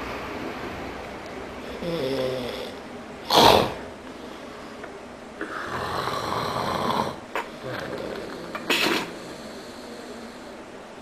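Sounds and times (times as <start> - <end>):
man snoring: 1.8 - 3.8, 5.4 - 8.6.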